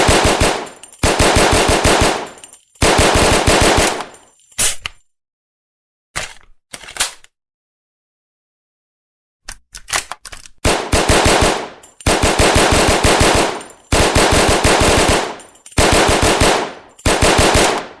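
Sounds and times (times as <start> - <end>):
automatic gunfire bursts: 0.0 - 4.1, 10.6 - 18.0
gun mechanism clicks: 9.5 - 10.6.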